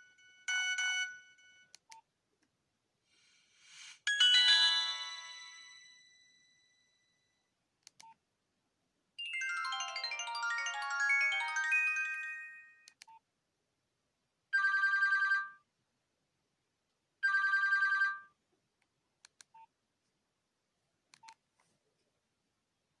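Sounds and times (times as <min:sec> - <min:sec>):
mobile phone melodic tones: 0:03.7 - 0:06.9, 0:09.2 - 0:12.9.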